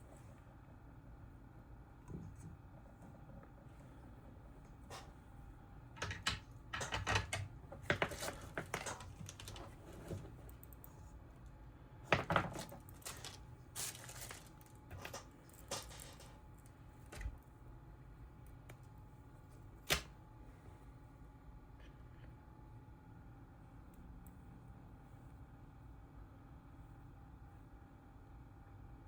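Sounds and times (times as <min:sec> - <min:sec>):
small tools clattering on workbench: 0:06.0 - 0:10.3, 0:12.2 - 0:16.4.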